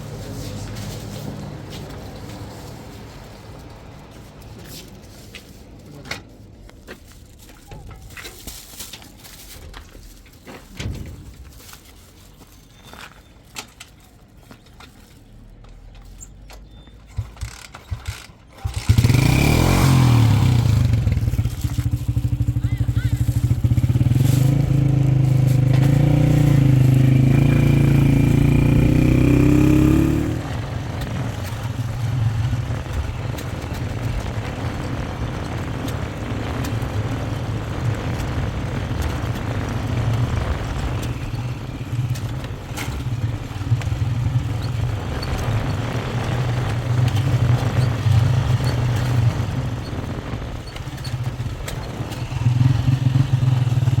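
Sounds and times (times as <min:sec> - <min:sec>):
motorcycle engine running: 0:17.1 - 0:54.0.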